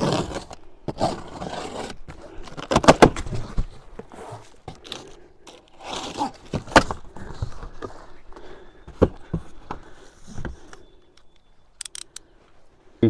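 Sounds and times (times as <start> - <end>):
cardboard scraping and tearing: 0.0 - 8.1
cardboard rustle: 0.0 - 10.7.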